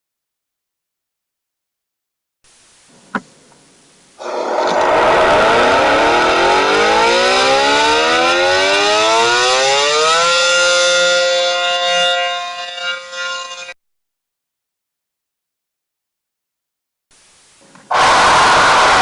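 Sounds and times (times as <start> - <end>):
warning siren winding up: 4.2 - 13.8.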